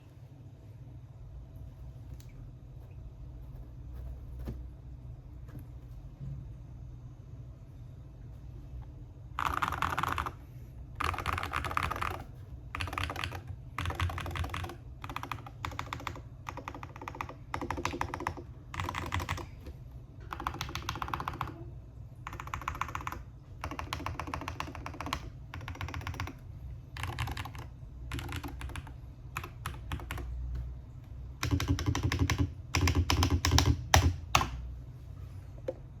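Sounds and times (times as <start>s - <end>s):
mechanical keyboard typing: 9.4s - 10.4s, 11.0s - 21.6s, 22.2s - 30.4s, 31.4s - 34.6s.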